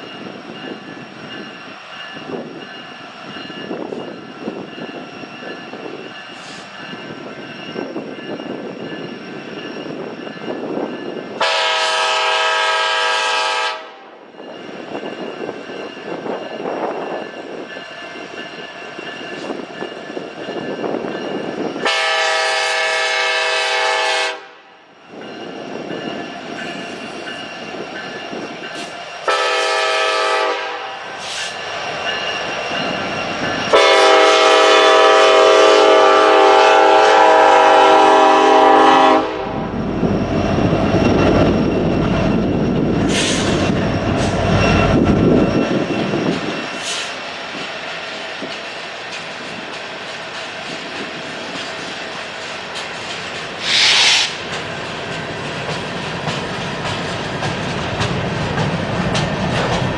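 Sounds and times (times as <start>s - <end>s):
train rumbling: 0.0s - 59.9s
locomotive air horn blasts: 11.4s - 14.1s, 21.8s - 24.7s, 29.3s - 31.0s, 33.7s - 39.7s.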